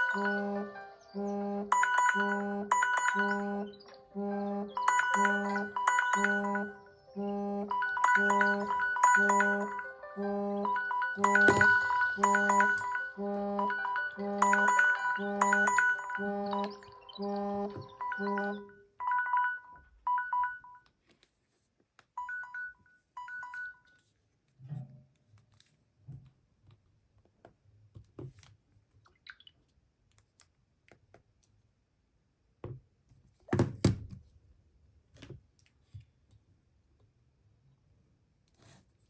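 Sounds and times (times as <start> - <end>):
phone alarm beeps: 0.0 - 0.8, 1.7 - 4.1, 4.7 - 20.8, 22.2 - 23.9.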